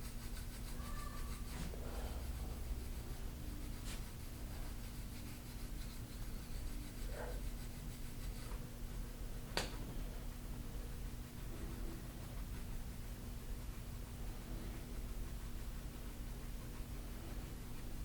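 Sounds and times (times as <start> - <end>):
hands rubbing skin: 0.0 - 8.7.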